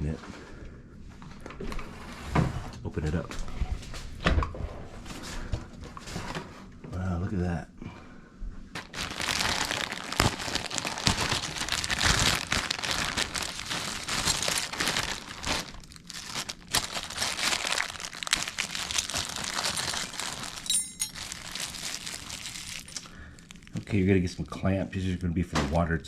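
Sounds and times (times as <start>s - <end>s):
plastic packaging crinkling: 8.8s - 24.3s.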